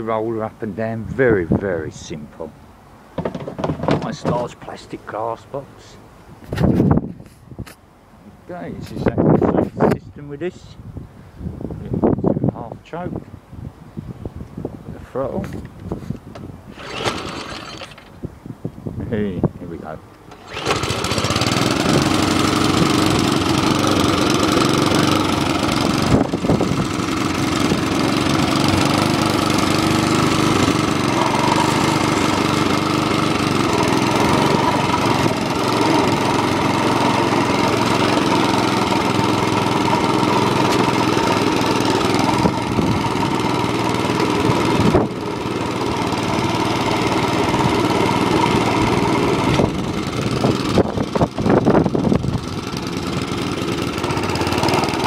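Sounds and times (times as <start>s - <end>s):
lawn mower engine running: 3.0s - 4.8s, 16.6s - 18.2s, 20.1s - 55.0s.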